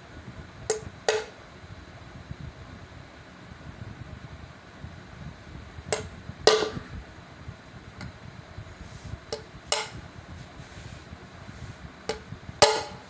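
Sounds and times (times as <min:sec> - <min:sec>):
tools clicking and knocking: 0:00.7 - 0:01.3, 0:09.4 - 0:10.0.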